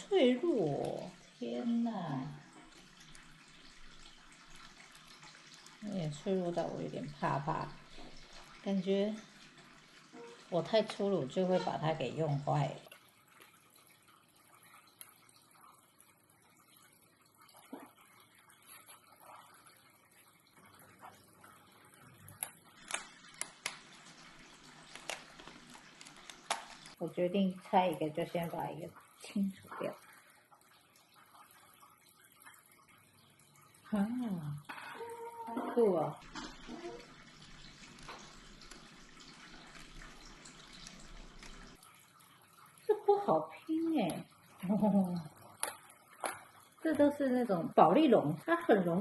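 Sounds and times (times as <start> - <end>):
foam puzzle pieces rustling: 22.8 - 27.0.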